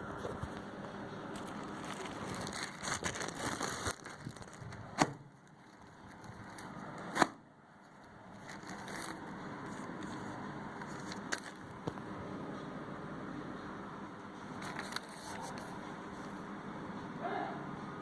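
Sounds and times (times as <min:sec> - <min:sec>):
plastic packaging crinkling: 0:01.3 - 0:06.9, 0:07.8 - 0:11.8, 0:14.6 - 0:15.7.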